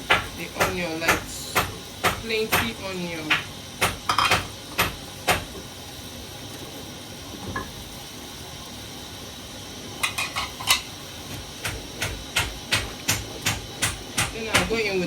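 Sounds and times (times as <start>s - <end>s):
onions sizzling in oil: 0.0s - 15.0s
metal spoon knocking pot: 0.1s - 4.5s.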